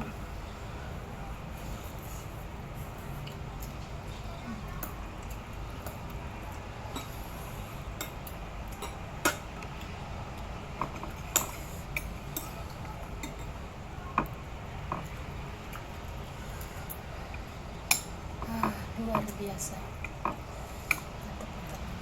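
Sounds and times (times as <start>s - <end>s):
cutlery clinking on a plate: 10.8s - 13.6s.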